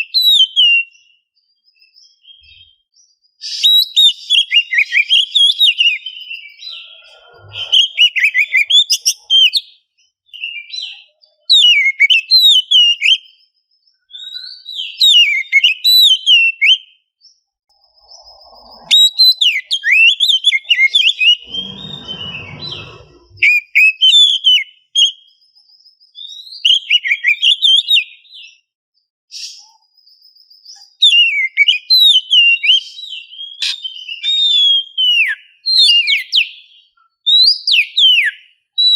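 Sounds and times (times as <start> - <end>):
bird singing whistled phrases: 0.0 - 2.8, 3.4 - 17.0, 17.8 - 25.4, 26.1 - 28.6, 37.3 - 38.9.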